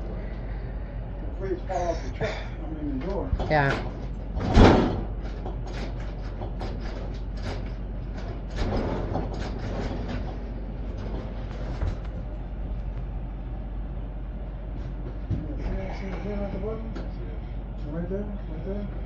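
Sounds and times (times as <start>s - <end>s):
steady low rumble: 0.0s - 19.0s
knocks and clatter of handling: 3.0s - 13.0s.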